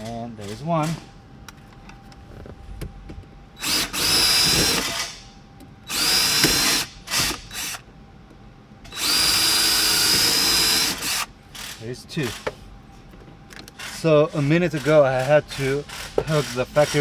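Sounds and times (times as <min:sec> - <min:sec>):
power drill whining: 0:01.8 - 0:08.0, 0:08.8 - 0:12.6, 0:13.5 - 0:17.0.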